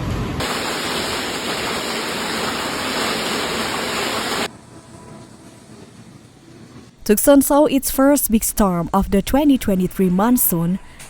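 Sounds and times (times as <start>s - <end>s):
heavy rain pouring: 0.4s - 4.5s.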